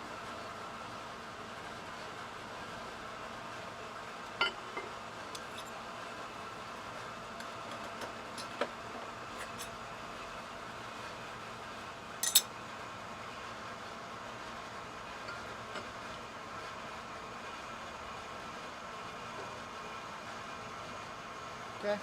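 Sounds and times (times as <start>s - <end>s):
workshop hum: 0.0s - 22.0s
metal tools clinking: 12.2s - 12.5s.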